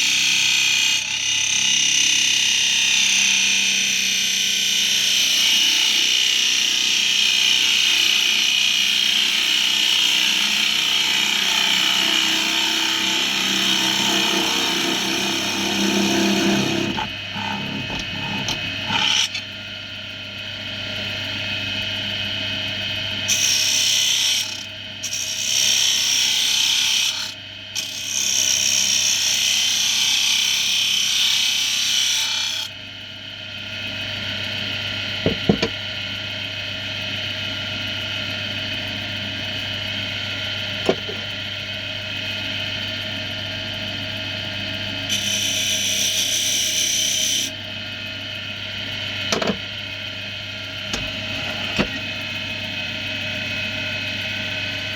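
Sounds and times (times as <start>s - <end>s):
wood lathe running: 0.1s - 19.4s, 23.3s - 32.7s, 35.3s - 35.8s, 40.8s - 41.4s, 45.1s - 47.5s
sharp knocks: 35.3s - 35.8s.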